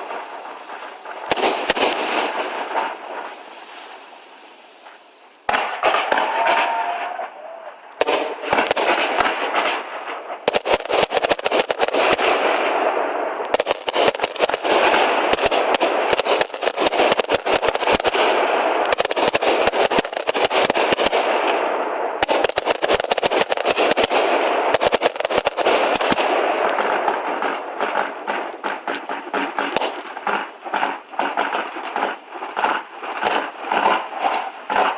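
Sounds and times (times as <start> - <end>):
fireworks bangs and crackling: 0.0 - 34.9.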